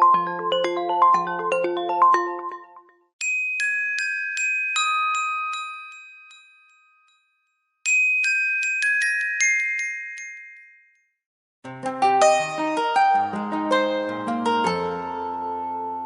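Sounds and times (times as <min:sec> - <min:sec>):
different phone ringtone: 0:00.0 - 0:06.7
glockenspiel-like phone ringtone: 0:00.0 - 0:11.2.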